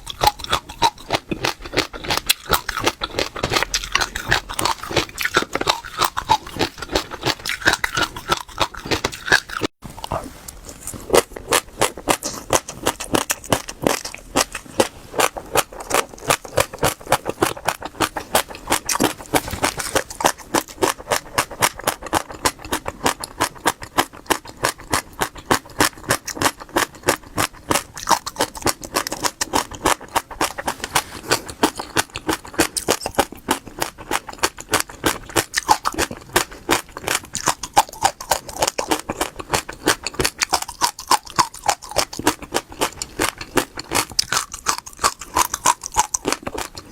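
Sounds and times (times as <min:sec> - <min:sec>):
seeds crunched and chewed: 0:00.0 - 0:46.9.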